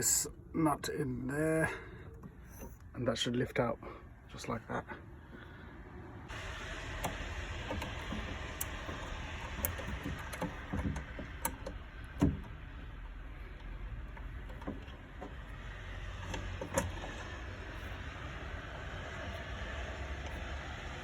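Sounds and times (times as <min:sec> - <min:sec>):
parts clicking and knocking: 0:02.0 - 0:02.9, 0:06.3 - 0:21.0
steady hiss: 0:06.3 - 0:21.0.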